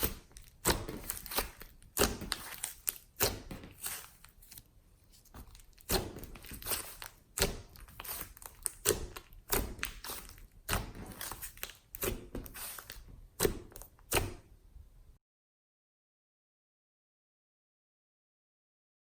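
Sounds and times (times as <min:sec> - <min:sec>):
slime squelching: 0:00.0 - 0:14.5.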